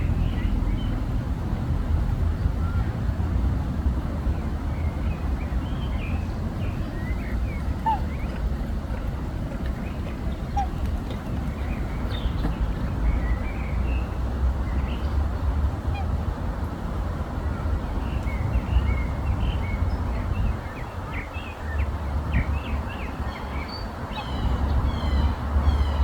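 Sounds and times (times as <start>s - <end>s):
swans and waterfowl calling: 7.3s - 12.6s, 23.3s - 26.0s.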